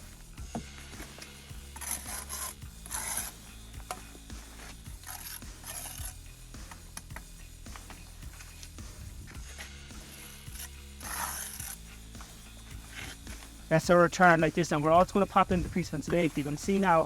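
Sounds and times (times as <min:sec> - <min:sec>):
hand tool scraping: 0:01.0 - 0:07.0, 0:07.8 - 0:13.6.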